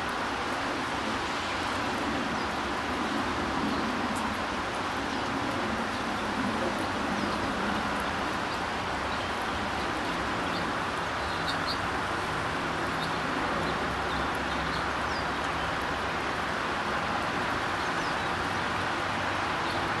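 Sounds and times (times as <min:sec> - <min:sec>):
birds chirping: 0:08.4 - 0:11.9.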